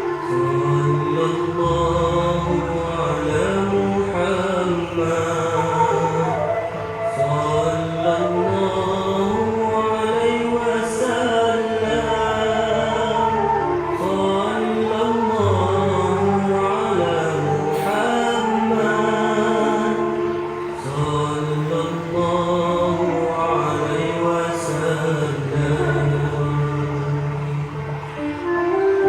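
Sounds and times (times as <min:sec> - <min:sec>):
chant-like vocals: 0:00.0 - 0:29.0
slow ambient music: 0:00.0 - 0:29.0.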